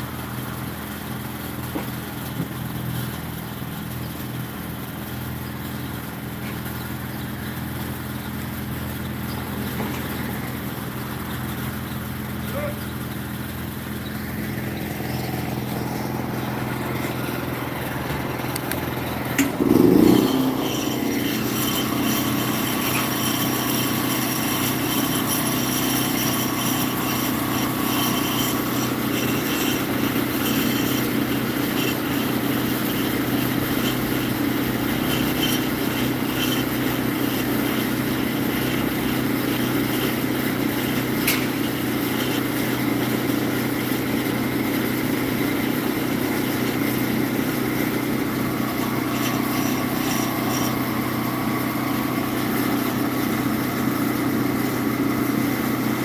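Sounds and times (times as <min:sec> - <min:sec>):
engine running steadily: 0:00.0 - 0:56.0.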